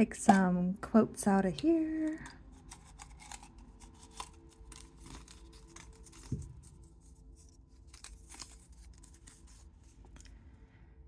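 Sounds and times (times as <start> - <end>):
paper rustling and crinkling: 2.0 - 10.4.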